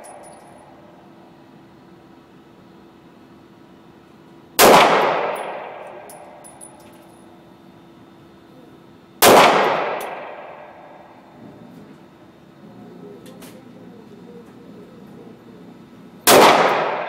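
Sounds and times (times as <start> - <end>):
light high tinks: 0.0 - 0.7
pistol shots echoing: 4.6 - 6.4, 9.2 - 11.0, 16.3 - 17.0.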